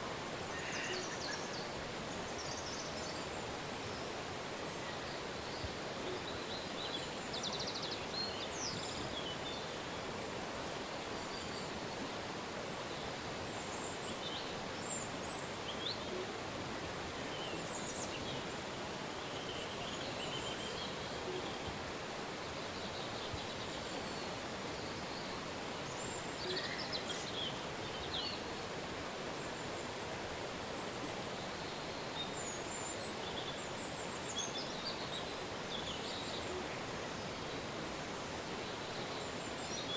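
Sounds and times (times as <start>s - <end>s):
small birds chirping: 0.0s - 28.7s, 29.4s - 39.9s
river water rushing: 0.0s - 39.9s.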